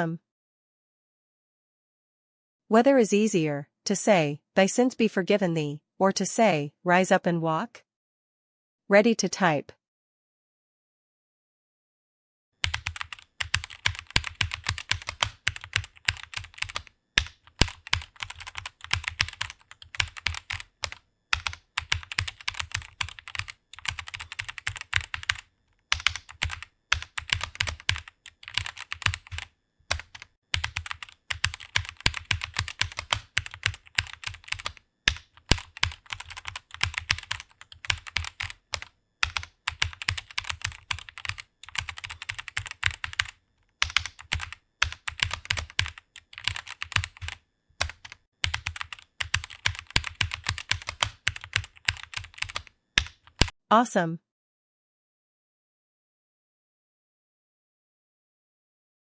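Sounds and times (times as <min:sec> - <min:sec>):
fast typing on keyboard: 0:12.6 - 0:53.6.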